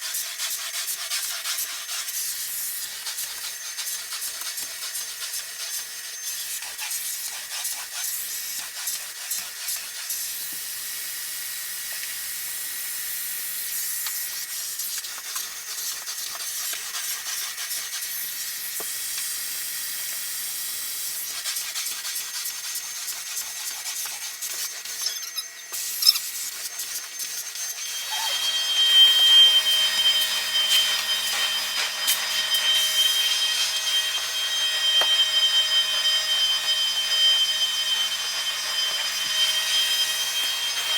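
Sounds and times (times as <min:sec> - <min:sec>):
carpet cleaner hissing: 0:17.6 - 0:40.9
rubbing strokes on carpet: 0:21.3 - 0:25.1, 0:25.8 - 0:35.2
machine whining: 0:24.4 - 0:40.9.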